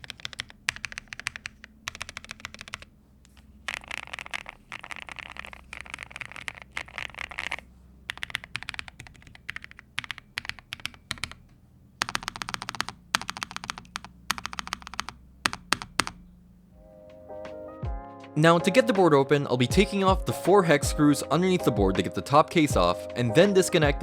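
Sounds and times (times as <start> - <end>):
keyboard key clacks: 0.0 - 16.3.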